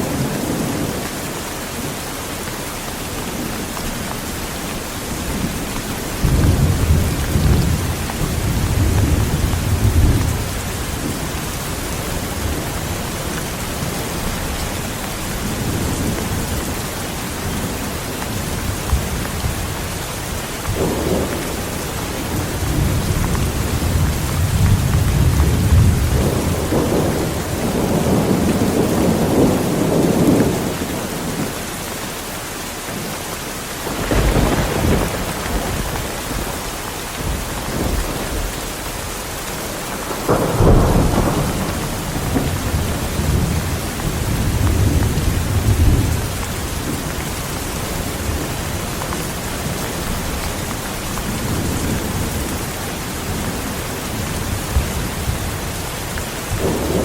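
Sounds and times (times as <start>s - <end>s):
heavy rain falling: 0.0s - 57.0s
rolling thunder: 5.1s - 14.6s, 20.7s - 31.6s, 33.8s - 52.7s, 56.4s - 57.0s.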